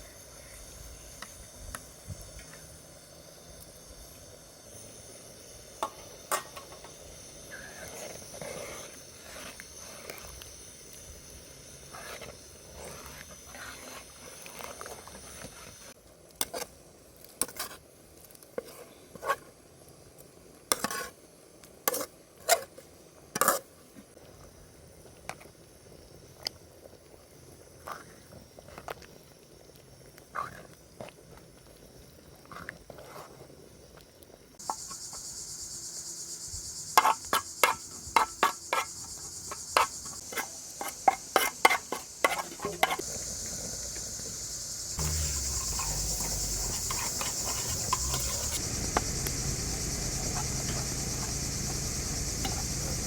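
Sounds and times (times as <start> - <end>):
crickets chirring: 0.0 - 16.0, 23.4 - 53.0.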